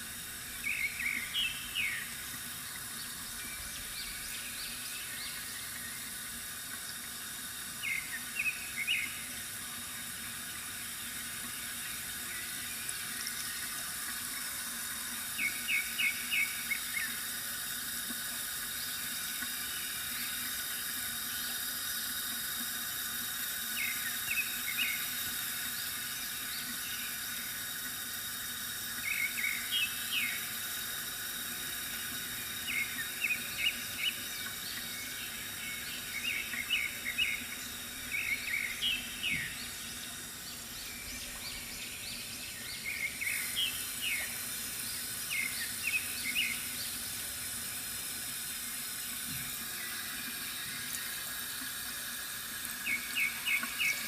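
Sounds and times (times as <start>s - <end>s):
water running from fountain: 0.0s - 54.0s
small birds chirping: 0.6s - 6.1s, 15.3s - 17.3s, 29.0s - 30.5s, 31.9s - 47.0s, 52.8s - 54.0s.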